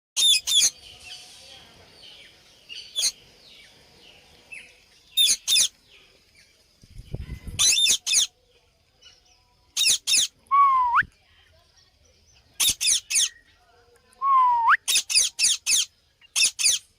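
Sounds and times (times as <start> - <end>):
faint chirps: 0.2 - 16.9.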